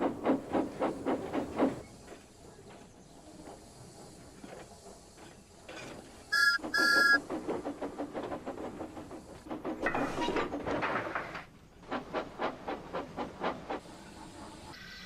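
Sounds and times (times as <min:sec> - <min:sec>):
railway wagons clattering: 0:00.0 - 0:15.0
steam whistle toots: 0:06.3 - 0:07.2.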